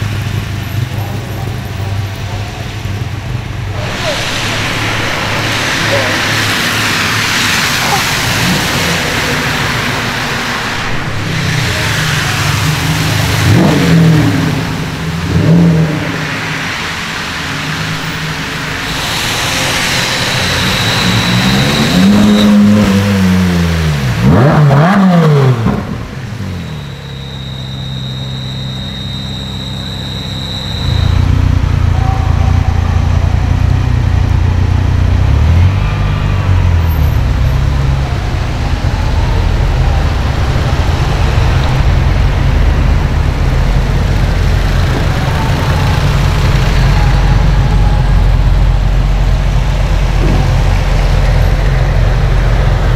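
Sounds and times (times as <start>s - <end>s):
car engines revving and accelerating: 0.0s - 52.9s
deep engine rumble: 0.0s - 52.9s
rain and tyres hissing: 0.0s - 52.9s
thin high whine: 17.5s - 22.9s, 26.7s - 33.7s.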